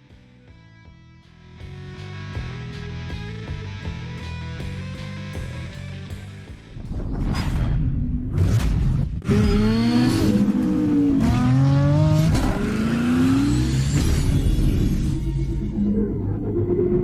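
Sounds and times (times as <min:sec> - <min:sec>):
car engine revving: 0:09.2 - 0:15.8.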